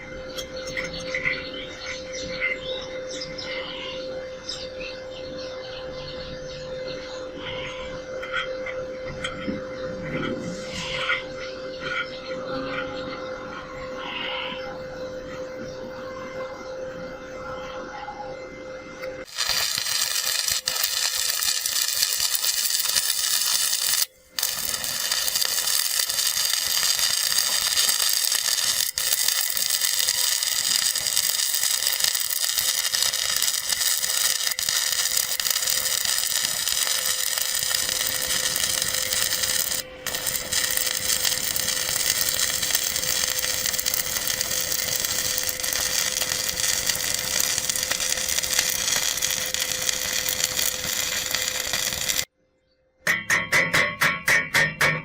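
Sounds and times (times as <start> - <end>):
welding arc crackling: 19.2 - 52.3.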